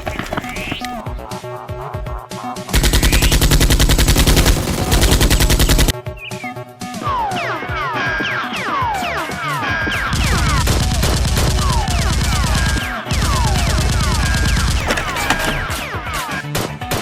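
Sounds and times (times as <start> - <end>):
rapid automatic gunfire: 2.8 - 5.9.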